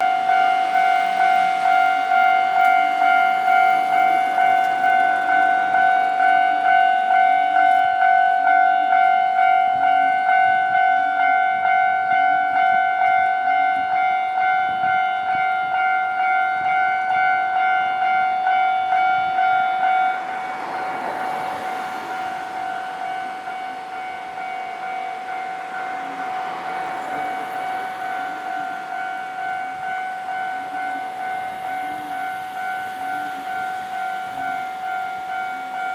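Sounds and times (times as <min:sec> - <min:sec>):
level crossing warning bell: 0:00.0 - 0:35.9
passing train rushing: 0:00.0 - 0:35.9.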